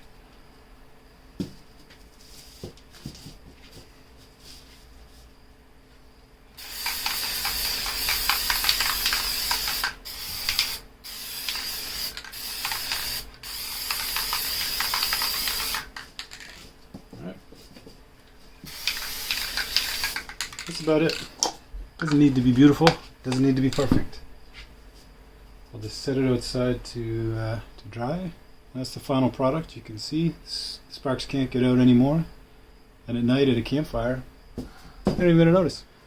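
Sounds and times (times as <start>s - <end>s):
spray paint can hissing: 6.6s - 16.6s, 18.6s - 20.8s.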